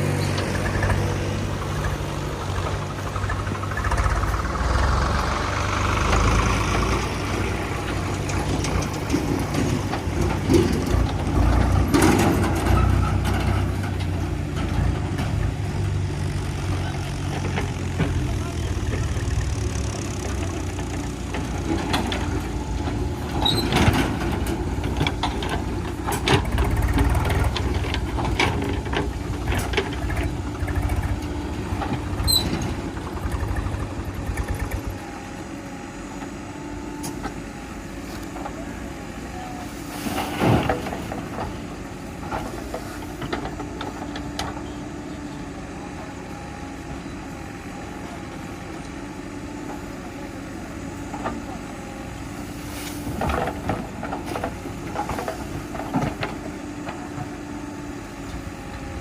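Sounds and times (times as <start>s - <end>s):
diesel machinery engine hum: 0.0s - 59.0s
metallic clanks and knocks: 8.0s - 15.6s.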